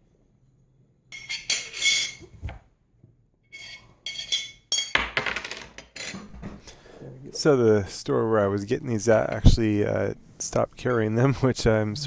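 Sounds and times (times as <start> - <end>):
metal and glass parts clinking: 1.2 - 2.2, 3.5 - 6.3.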